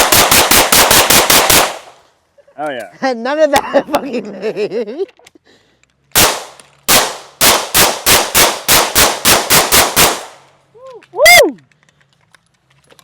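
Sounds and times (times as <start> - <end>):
gunshots: 0.0 - 2.0, 6.1 - 10.5.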